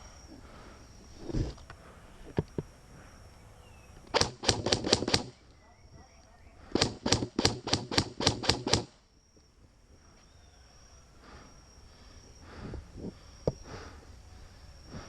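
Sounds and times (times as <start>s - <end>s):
airsoft gun rapid shots: 4.1s - 5.4s, 6.8s - 9.0s.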